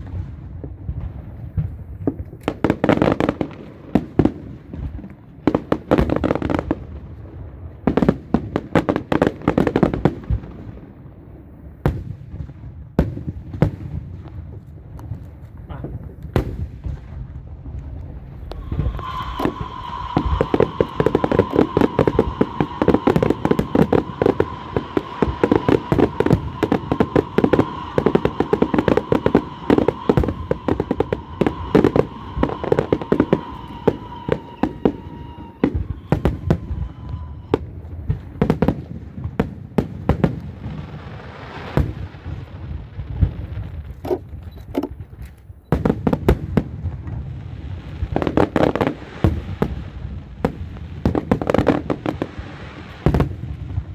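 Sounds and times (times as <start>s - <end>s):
steady high tone: 18.4s - 36.2s.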